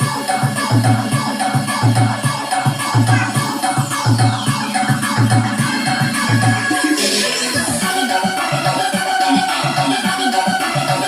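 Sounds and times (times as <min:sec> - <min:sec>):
heavy bass beat: 0:00.0 - 0:10.2
electronic dance music: 0:00.0 - 0:11.0.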